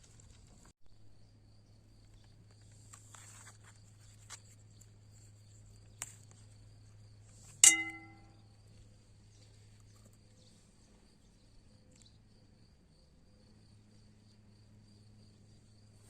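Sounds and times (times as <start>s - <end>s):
faint high steady tones: 7.6s - 8.3s
loud ringing strike: 7.6s - 8.3s.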